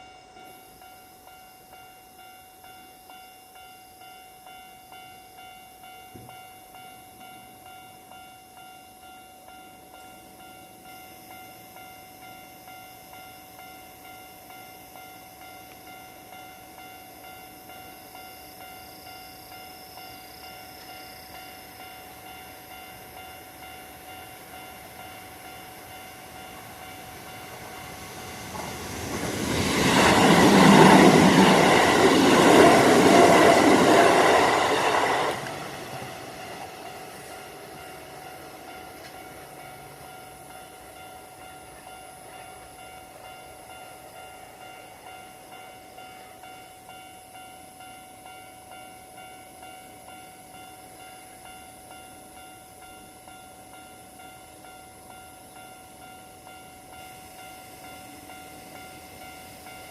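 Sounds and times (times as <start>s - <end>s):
electric train passing: 0.0s - 59.9s
level-crossing bell clanging: 0.0s - 59.9s.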